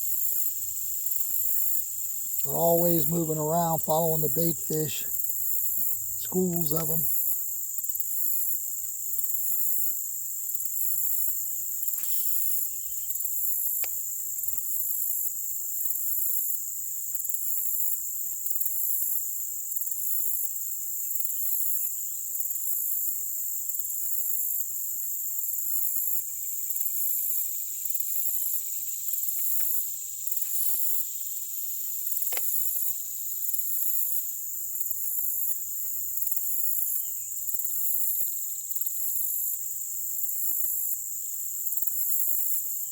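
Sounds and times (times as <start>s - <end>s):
crickets shrilling: 0.0s - 42.9s
faint ticks: 13.4s - 15.1s, 29.1s - 31.0s, 31.8s - 34.2s.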